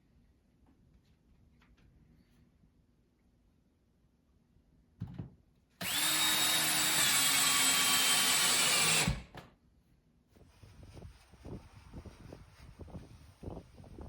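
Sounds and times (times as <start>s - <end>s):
power drill whining: 5.8s - 9.3s.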